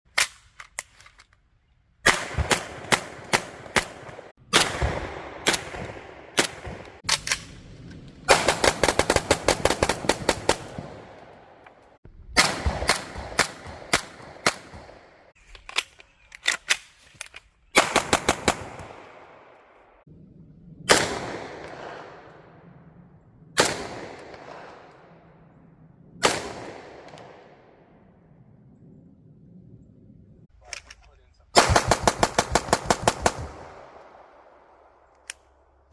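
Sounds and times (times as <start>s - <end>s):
gunshots echoing: 2.0s - 7.6s, 8.3s - 11.7s, 12.3s - 15.3s, 17.7s - 20.0s, 20.9s - 22.7s, 23.6s - 25.2s, 26.2s - 27.9s, 31.5s - 35.0s.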